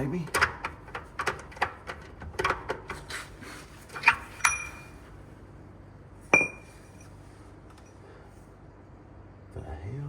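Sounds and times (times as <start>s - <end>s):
steel tools clanking: 3.9s - 5.0s, 6.3s - 7.2s.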